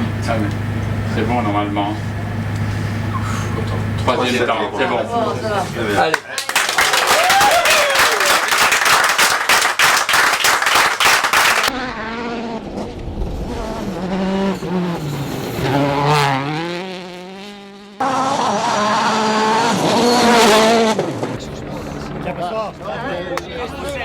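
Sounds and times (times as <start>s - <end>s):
rally car engine revving: 11.6s - 24.0s.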